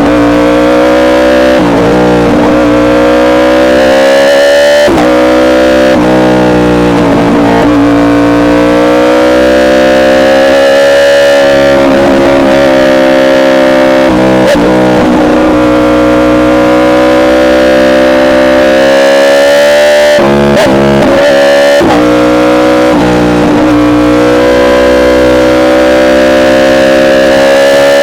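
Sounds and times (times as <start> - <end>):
motorcycle engine revving high: 0.0 - 28.0
quickshifter upshifts: 0.0 - 28.0.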